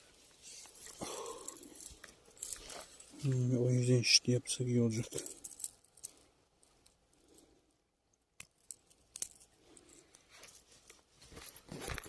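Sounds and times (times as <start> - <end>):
soft rustling: 0.0 - 4.0, 8.9 - 12.0.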